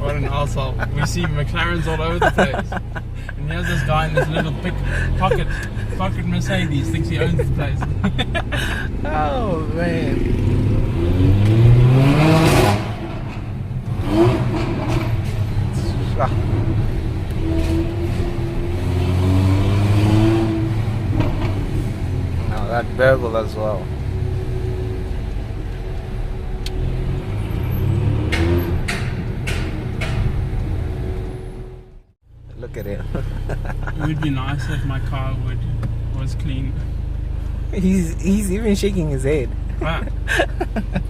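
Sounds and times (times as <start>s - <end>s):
car engine revving: 0.0s - 32.0s
exhaust cracks: 10.0s - 18.9s.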